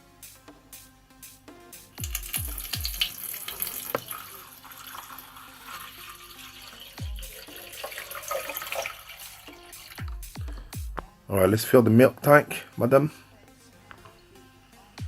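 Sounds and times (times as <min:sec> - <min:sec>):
tap water filling a tank: 0:02.0 - 0:10.4.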